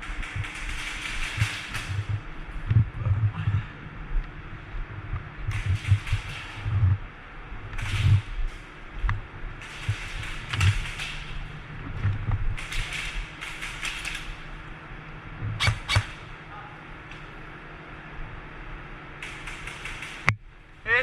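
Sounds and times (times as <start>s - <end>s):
sharp cracks: 0.0s - 3.1s, 5.2s - 7.0s, 7.7s - 14.8s, 15.6s - 16.4s, 19.2s - 20.4s
gear rustling: 0.2s - 14.6s
dull low thumps: 1.3s - 12.7s.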